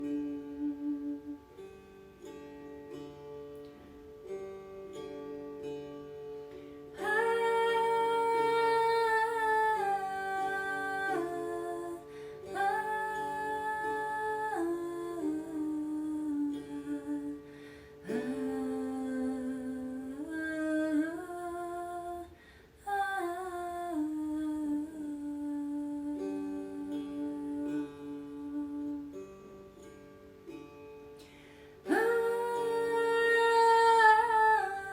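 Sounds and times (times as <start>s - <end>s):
person singing long held notes: 0.0s - 1.8s, 6.9s - 29.4s, 31.8s - 34.9s
plucked string instrument: 0.0s - 34.9s.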